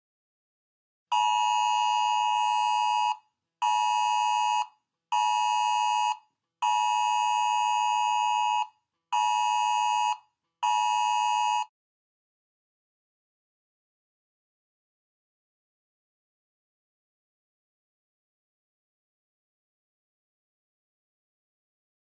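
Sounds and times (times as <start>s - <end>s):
electronic alarm beeping: 1.1s - 11.7s.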